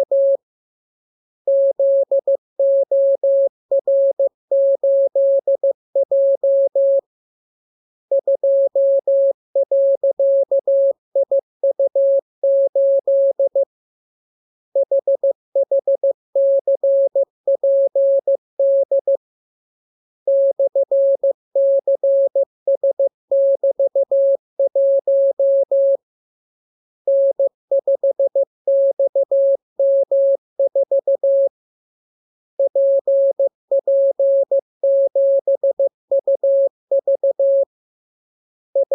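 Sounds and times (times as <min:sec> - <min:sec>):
morse code beeps: 0:00.0 - 0:00.4, 0:01.5 - 0:07.0, 0:20.3 - 0:26.0, 0:27.1 - 0:31.5, 0:32.6 - 0:37.7.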